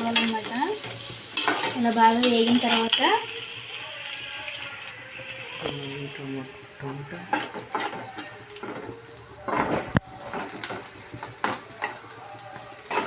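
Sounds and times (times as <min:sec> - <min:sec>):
spatula scraping a pan: 0:00.0 - 0:02.9, 0:06.8 - 0:12.0
onions sizzling in hot oil: 0:00.0 - 0:13.0.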